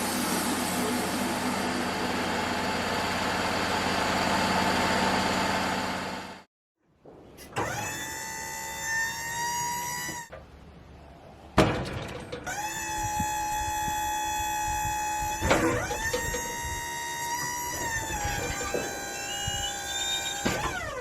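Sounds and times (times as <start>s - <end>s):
sawmill machine running: 0.0s - 6.5s, 12.4s - 21.0s
motor whining: 12.5s - 21.0s.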